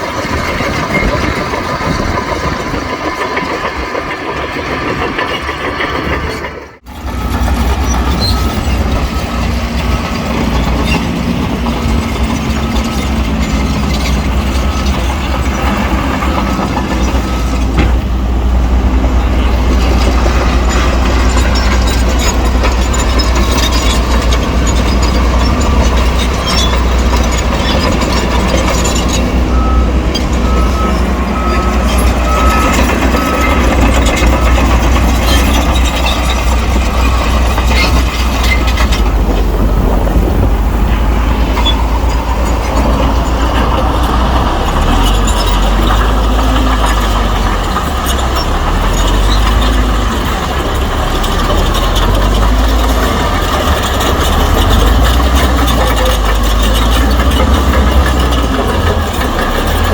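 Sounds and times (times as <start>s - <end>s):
heavy diesel engines under load: 0.0s - 59.9s
machinery clanks and knocks: 0.0s - 59.9s
reversing alarm beeps: 28.8s - 35.6s.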